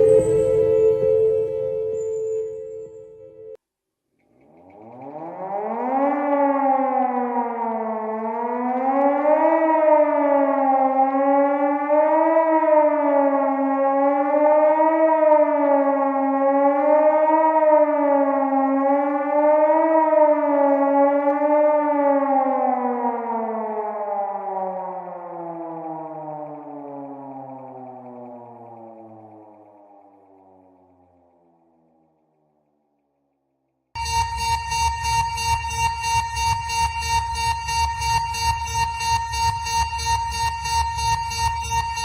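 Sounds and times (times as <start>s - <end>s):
warning siren wailing: 0.0s - 3.6s, 4.8s - 31.9s, 34.0s - 42.0s.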